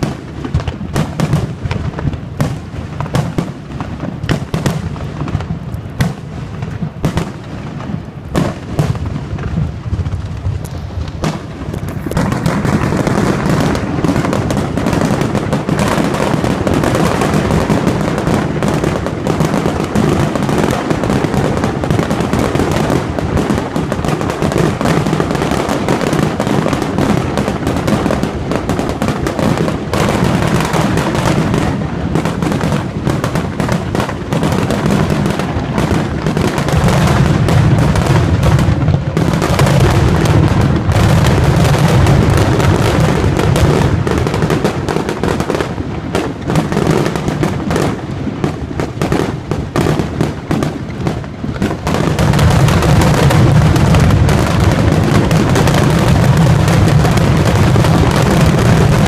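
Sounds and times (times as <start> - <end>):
fireworks bangs: 0.0 - 59.0.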